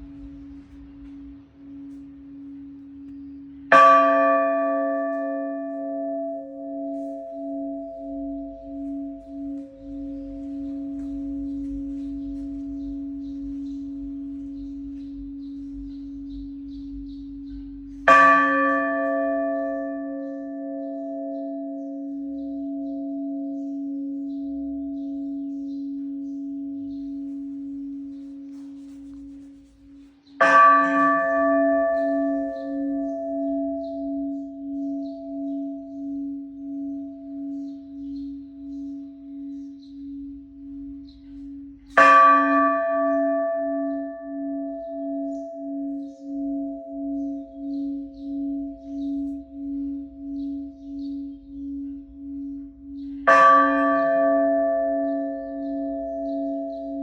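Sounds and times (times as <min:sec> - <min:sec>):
church bell ringing: 0:00.0 - 0:57.0.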